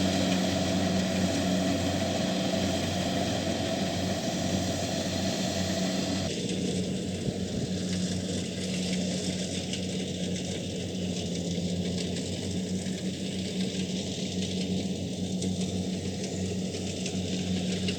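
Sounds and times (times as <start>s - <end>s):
diesel engine humming: 0.0s - 6.3s
threshing machinery noise: 0.0s - 17.9s.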